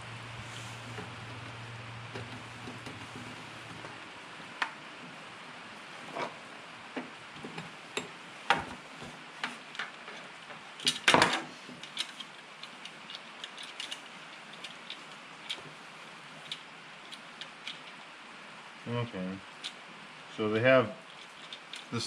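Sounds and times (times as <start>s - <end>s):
plastic and metal parts clicking: 10.8s - 15.6s, 21.1s - 22.0s.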